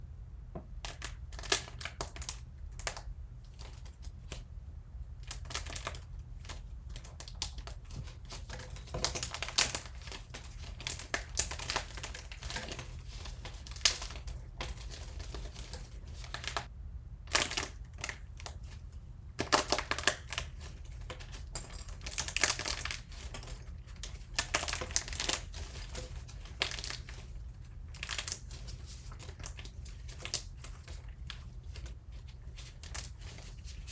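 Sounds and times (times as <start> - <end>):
brittle objects crackling and breaking: 7.2 - 16.7, 19.4 - 31.9.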